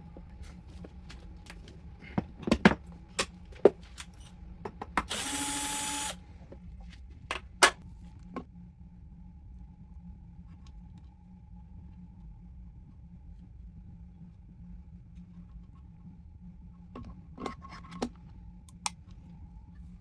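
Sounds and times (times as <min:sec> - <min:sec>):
tools and parts clicking and knocking: 0:02.1 - 0:06.1
small electric motor whirring: 0:05.0 - 0:06.5.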